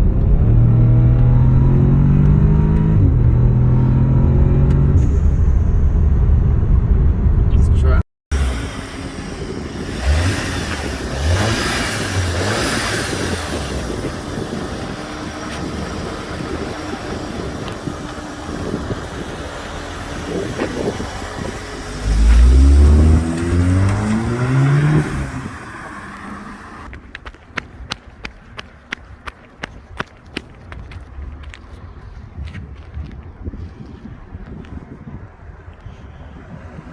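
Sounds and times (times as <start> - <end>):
car engine accelerating: 0.0 - 27.0
road noise: 0.0 - 36.9.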